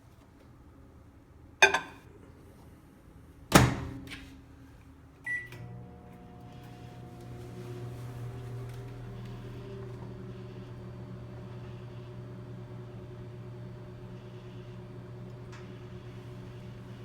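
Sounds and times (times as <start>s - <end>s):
microwave door banging shut: 3.5s - 4.0s
microwave oven humming: 4.9s - 17.0s.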